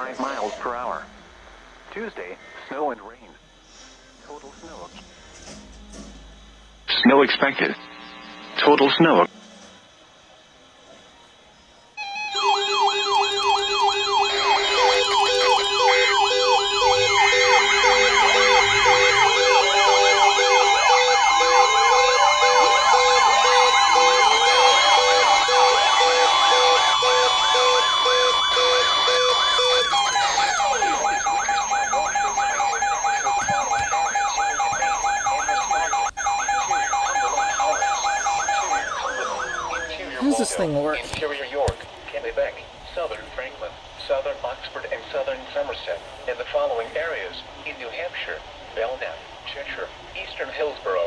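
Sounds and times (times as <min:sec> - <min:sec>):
electronic siren sweeps: 0:06.2 - 0:09.3, 0:11.8 - 0:41.2
pulsing beep: 0:12.0 - 0:40.9
steady alert tones: 0:12.0 - 0:41.5.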